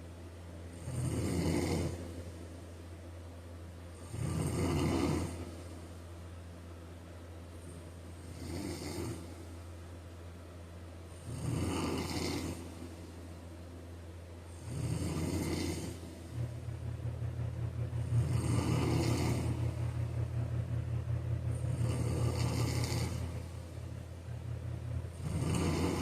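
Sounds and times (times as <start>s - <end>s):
steady low hum: 0.0s - 26.0s
person snoring: 0.7s - 2.1s, 4.0s - 5.6s, 8.2s - 9.4s, 11.2s - 12.7s, 14.5s - 16.0s, 18.2s - 19.8s, 21.7s - 23.5s, 25.1s - 26.0s.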